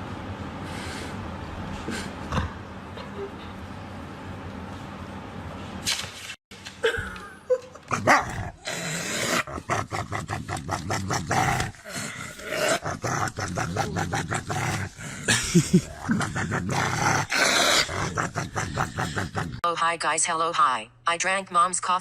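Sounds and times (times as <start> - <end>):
dog growling and barking: 7.8 - 19.6.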